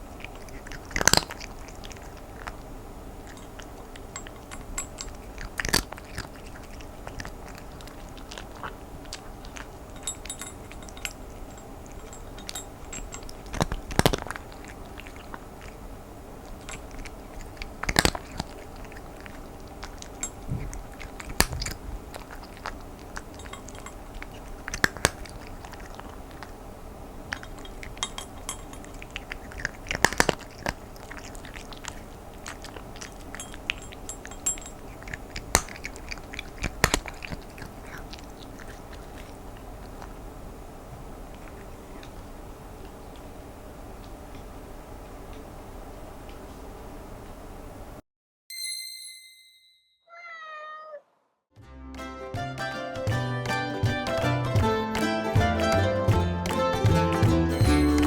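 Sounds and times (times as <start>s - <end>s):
cat crunching dry kibble: 0.0s - 45.2s.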